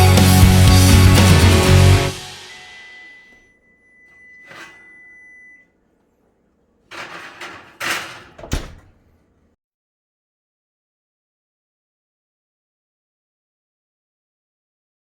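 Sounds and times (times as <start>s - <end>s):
faint high tone: 2.4s - 5.6s
scraping and rustling: 4.1s - 9.5s.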